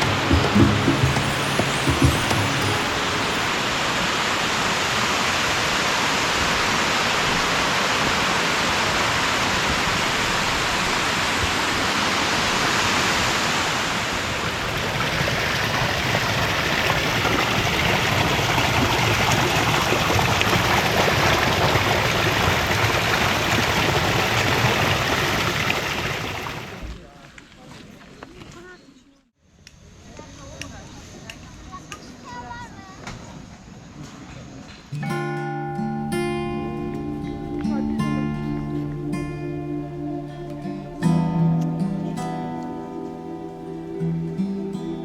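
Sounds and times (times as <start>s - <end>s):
flowing water rushing: 0.0s - 26.8s.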